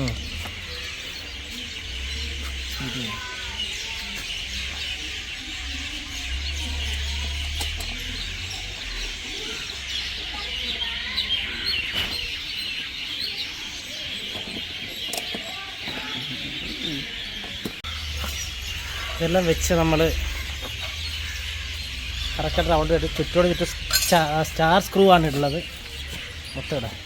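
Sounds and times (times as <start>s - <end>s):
small birds chirping: 0.0s - 27.0s
low hum: 17.8s - 26.0s.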